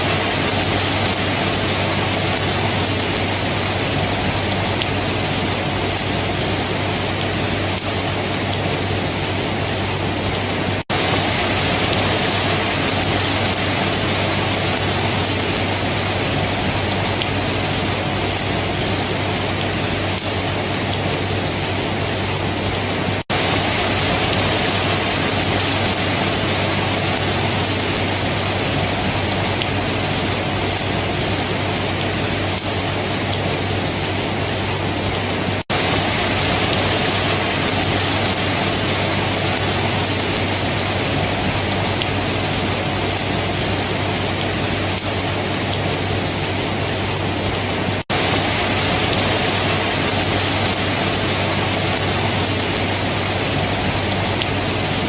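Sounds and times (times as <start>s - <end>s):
steady dense rainfall: 0.0s - 55.0s.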